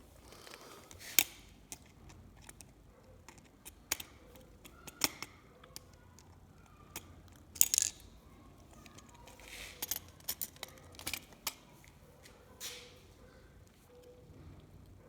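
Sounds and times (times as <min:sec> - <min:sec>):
small clicks and taps: 0:01.2 - 0:08.0.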